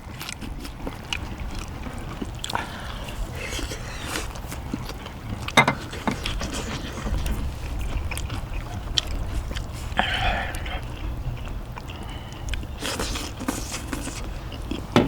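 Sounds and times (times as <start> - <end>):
low steady rumble: 0.0 - 15.0
eating utensils clicking: 5.4 - 7.4.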